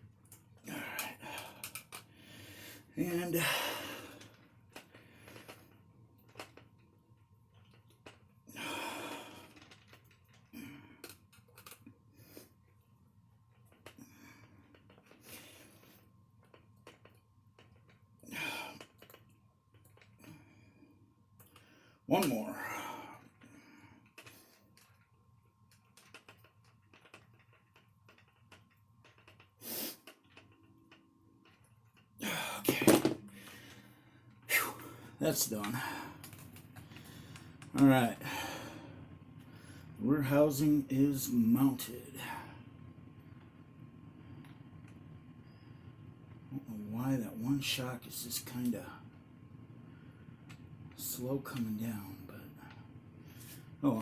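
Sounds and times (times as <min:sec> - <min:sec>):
plastic parts and tool clicking: 0:25.7 - 0:32.0.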